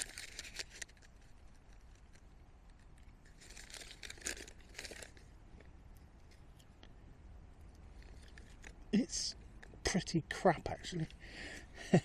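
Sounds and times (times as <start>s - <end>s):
rustling: 0.0s - 7.0s, 7.6s - 9.8s.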